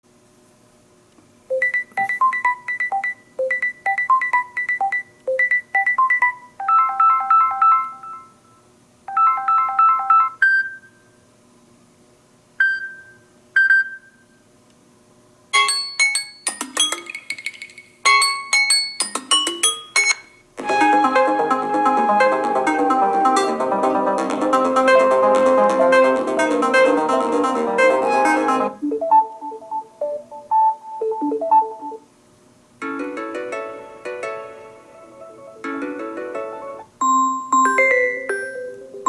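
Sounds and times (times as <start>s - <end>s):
electronic ringtone melody: 1.5s - 8.4s, 9.1s - 10.4s, 19.4s - 32.0s.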